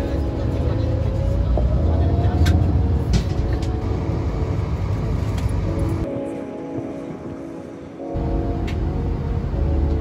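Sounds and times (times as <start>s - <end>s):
vehicle rumble from inside: 0.0s - 6.1s.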